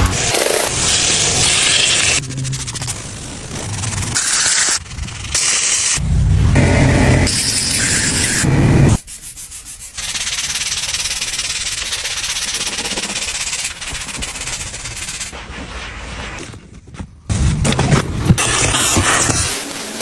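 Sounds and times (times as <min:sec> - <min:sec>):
loud full-range noise: 0:05.5 - 0:09.0
rhythmic sanding rasp: 0:06.6 - 0:15.9.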